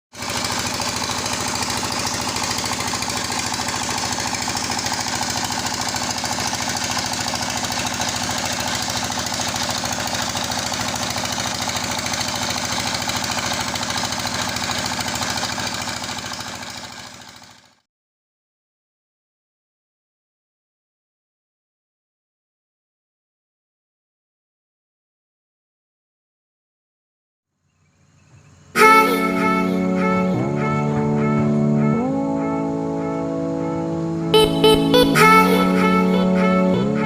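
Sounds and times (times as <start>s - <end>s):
diesel engine knocking: 0.1s - 17.8s.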